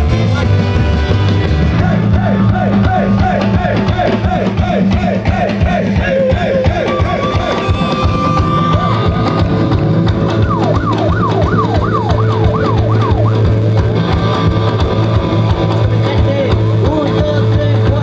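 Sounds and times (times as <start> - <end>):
live band playing: 0.0 - 18.0
siren-like effect sweeping down: 10.3 - 13.8.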